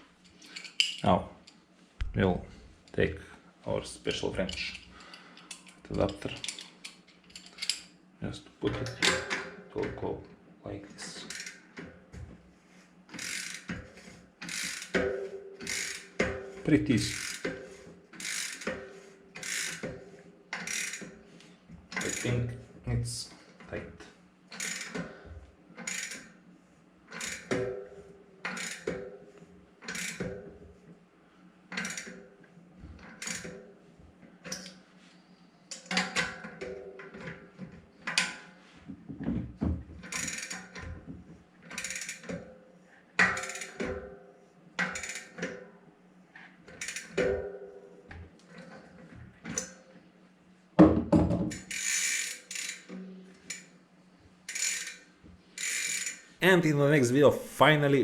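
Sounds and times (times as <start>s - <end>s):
metallic ratchet clicking: 54.5s - 55.0s.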